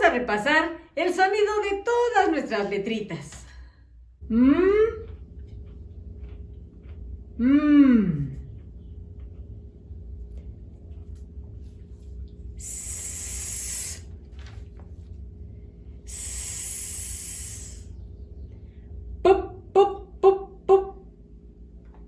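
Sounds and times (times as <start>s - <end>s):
person hissing sss sound: 12.6s - 14.1s, 16.1s - 17.9s.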